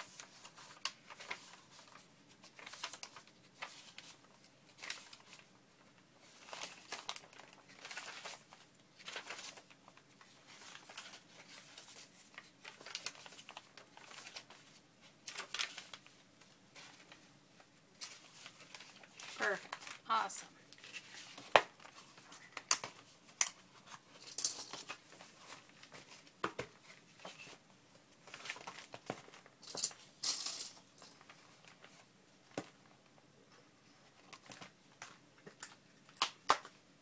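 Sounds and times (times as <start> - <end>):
paper pages turning: 0.0 - 20.0, 20.7 - 27.6, 28.2 - 29.5.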